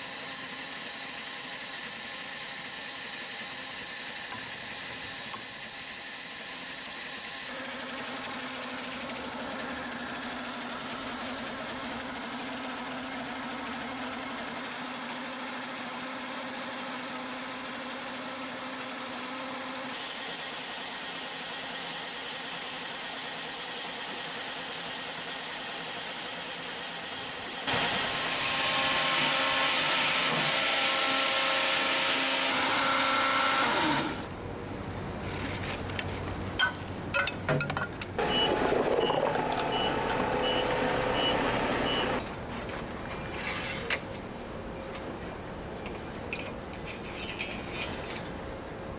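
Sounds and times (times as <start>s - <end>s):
wood-cutting machinery droning: 0.0s - 34.4s, 38.2s - 42.2s.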